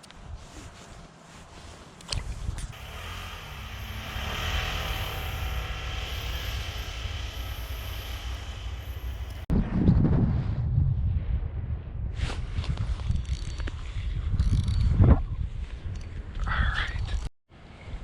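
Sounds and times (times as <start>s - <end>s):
wind on microphone: 0.0s - 18.0s
engine running: 2.7s - 9.5s.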